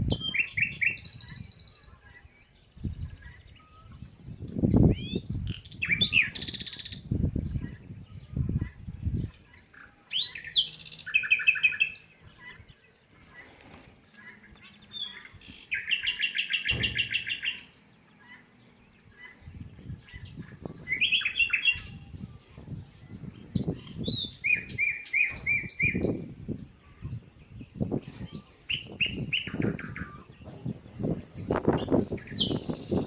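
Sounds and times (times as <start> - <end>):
small birds chirping: 0.0 - 33.0
low thumps and rustles: 16.7 - 17.3, 29.6 - 33.0.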